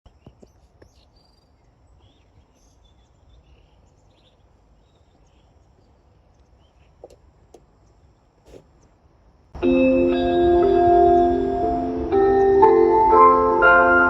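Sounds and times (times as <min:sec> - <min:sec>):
insect chirps: 0:00.1 - 0:09.6.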